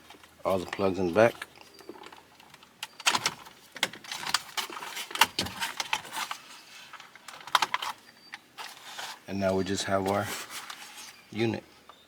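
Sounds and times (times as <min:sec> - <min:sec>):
wiring connectors clicking and rattling: 0:00.0 - 0:06.4, 0:07.0 - 0:08.0.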